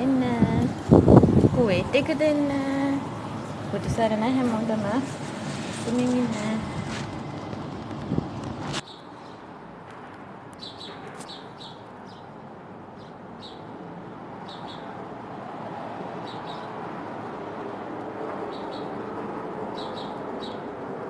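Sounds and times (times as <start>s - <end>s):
wind rushing: 0.0s - 8.8s
small bird chirping: 14.4s - 14.9s, 19.8s - 20.6s.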